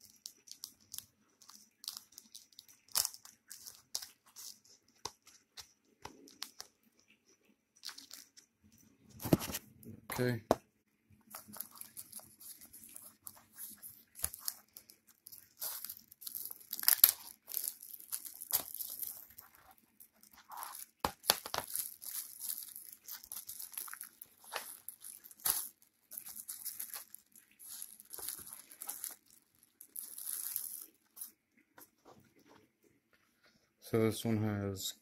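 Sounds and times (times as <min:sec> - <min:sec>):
plastic shrink wrap tearing: 0:00.0 - 0:06.7, 0:07.8 - 0:08.4, 0:11.3 - 0:31.4.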